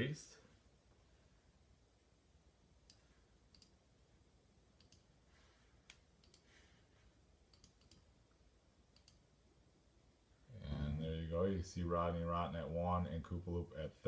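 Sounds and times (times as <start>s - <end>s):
faint computer clicks: 2.8s - 3.8s, 4.8s - 5.1s, 5.8s - 6.5s, 7.5s - 8.1s, 8.9s - 9.2s.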